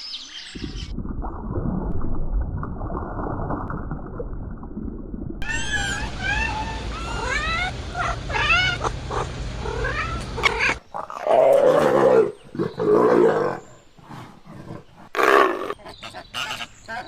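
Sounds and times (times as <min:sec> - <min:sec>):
steady low hum: 0:05.4 - 0:11.0
animal yowling calls: 0:05.4 - 0:12.4.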